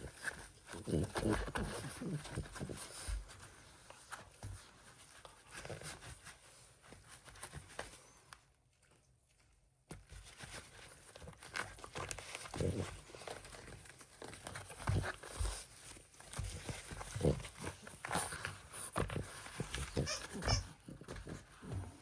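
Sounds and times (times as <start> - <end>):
dog chewing plush toy: 11.0 - 22.0
dog grunting: 19.5 - 22.0.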